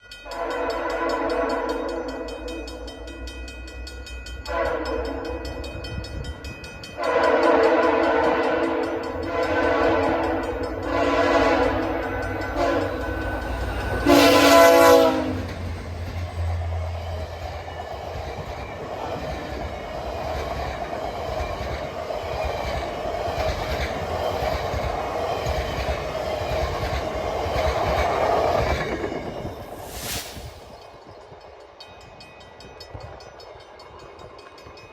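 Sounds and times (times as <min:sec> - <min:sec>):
train rumble and rail noise: 0:00.0 - 0:34.9
train horn chord blasts: 0:00.2 - 0:02.6, 0:04.4 - 0:05.6, 0:07.0 - 0:15.5.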